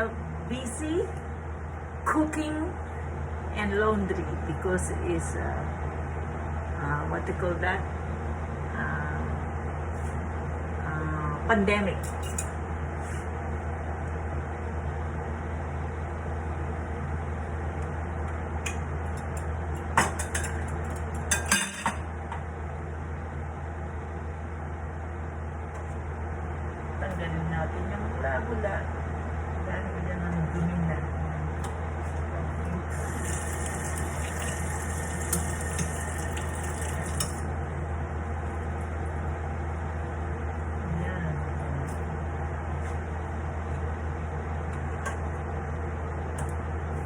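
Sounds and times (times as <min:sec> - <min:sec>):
steady low hum: 0:00.0 - 0:47.0
water running with a hiss: 0:32.9 - 0:37.4.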